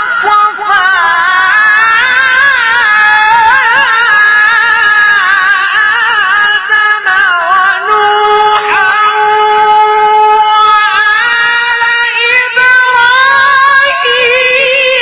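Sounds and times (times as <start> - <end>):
man chanting recitation: 0.3 - 15.0.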